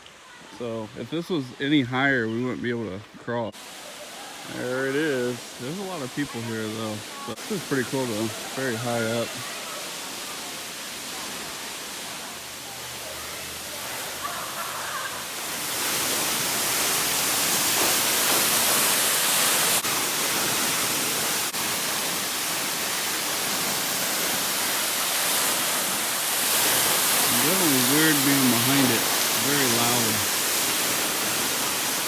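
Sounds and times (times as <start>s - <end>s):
waterfall rushing: 3.6s - 32.0s.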